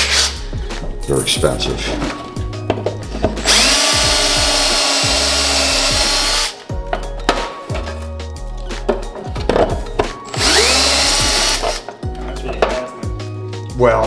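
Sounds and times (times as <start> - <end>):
drill boring through plastic: 0.0 - 0.4, 1.9 - 6.6, 10.2 - 12.0
background music with low beat: 0.0 - 14.0.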